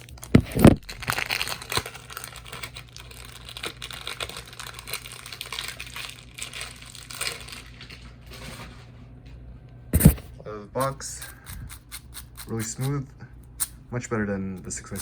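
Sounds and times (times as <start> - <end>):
plastic crinkling: 0.0 - 8.8.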